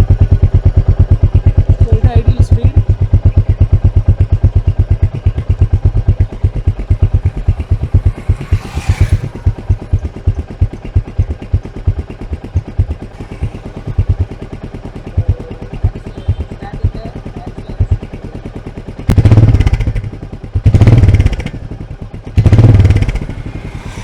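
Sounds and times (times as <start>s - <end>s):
motorcycle engine idling: 0.0s - 24.0s.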